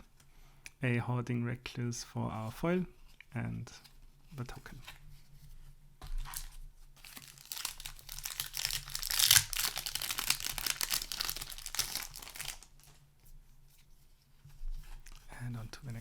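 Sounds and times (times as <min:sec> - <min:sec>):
foil wrapper crinkling and tearing: 0:06.2 - 0:13.0.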